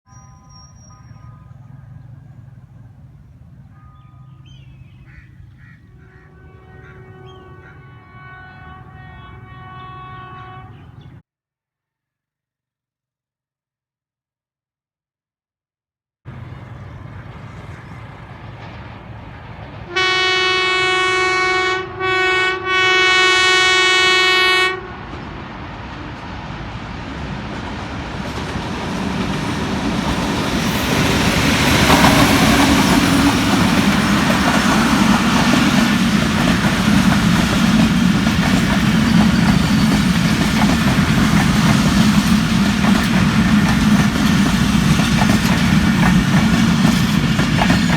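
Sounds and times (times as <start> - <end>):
train horn: 0.1 - 2.9, 5.1 - 11.2, 19.8 - 26.5
diesel locomotive rumbling: 0.1 - 11.2, 16.3 - 47.9
birds chirping: 0.2 - 11.2, 16.3 - 19.9.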